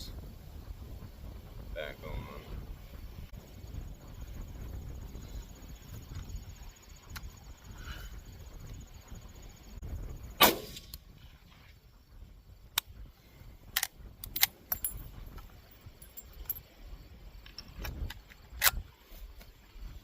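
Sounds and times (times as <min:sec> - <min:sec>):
rifle shot with echo: 0:10.4 - 0:11.0
rifle lever metallic clicks: 0:13.8 - 0:15.0.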